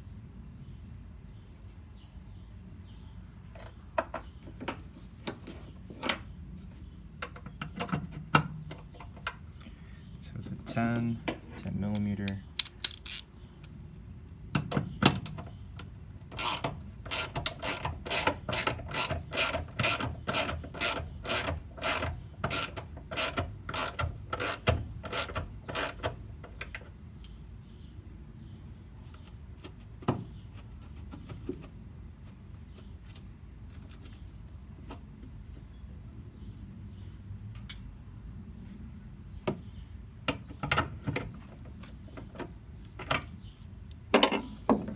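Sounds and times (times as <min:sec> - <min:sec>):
socket ratchet clicking: 0:11.9 - 0:13.3, 0:16.4 - 0:26.7.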